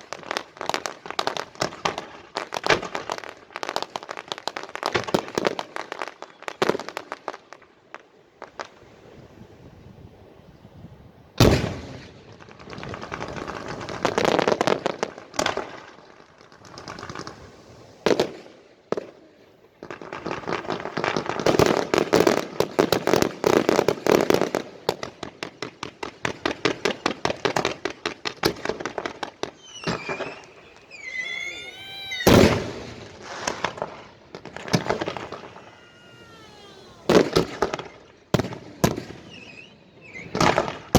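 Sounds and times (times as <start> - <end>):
rapid firework pops: 0.0 - 7.7, 19.8 - 30.6, 32.3 - 40.9
fireworks crackling: 12.3 - 40.9
firework bangs: 26.1 - 40.9.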